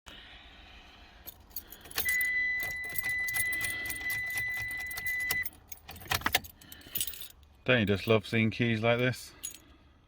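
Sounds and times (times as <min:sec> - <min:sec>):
car keys jangling: 0:01.2 - 0:08.2, 0:09.0 - 0:09.7.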